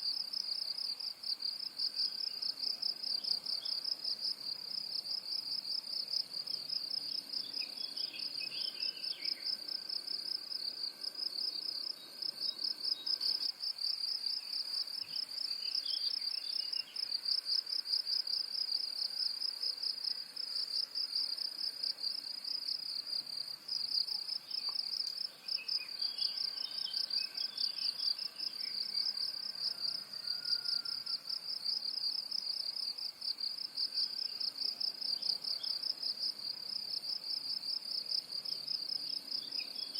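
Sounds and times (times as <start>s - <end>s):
insects trilling: 0.0s - 39.9s
faint bird chirps: 14.3s - 17.2s, 24.1s - 31.2s.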